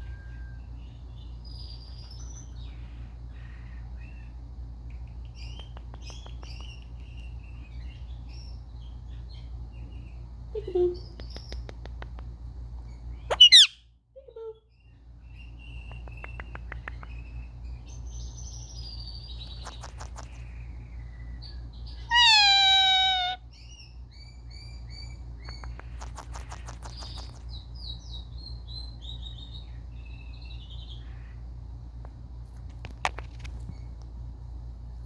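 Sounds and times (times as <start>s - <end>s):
low steady hum: 0.0s - 35.0s
parrot chirps and clicks: 4.9s - 7.4s, 11.0s - 13.8s, 15.8s - 17.4s, 19.4s - 20.4s, 22.1s - 23.4s, 25.4s - 27.6s, 32.0s - 34.1s
parrot drawn-out falling call: 22.1s - 23.4s.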